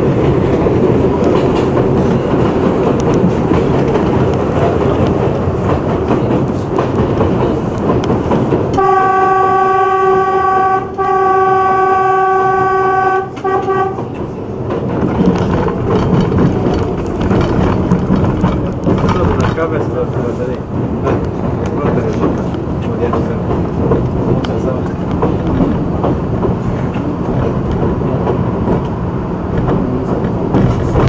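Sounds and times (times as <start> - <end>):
train wheels rumbling and clattering: 0.0 - 31.0
train horn blasts: 8.8 - 14.1.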